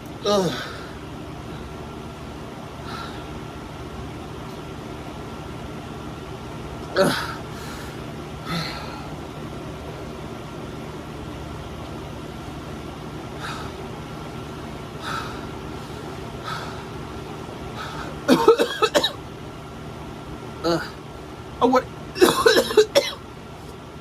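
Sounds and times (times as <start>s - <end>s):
steady background hum: 0.0s - 24.0s
person breathing hard: 0.3s - 1.9s, 2.8s - 3.4s, 7.0s - 9.2s, 13.3s - 13.9s, 14.9s - 18.3s.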